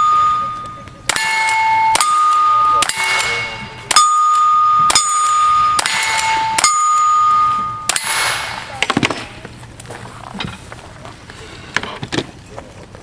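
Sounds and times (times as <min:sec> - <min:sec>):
steel target ringing: 0:00.0 - 0:09.4
gunshots: 0:01.1 - 0:04.1, 0:04.9 - 0:07.1, 0:07.9 - 0:09.3.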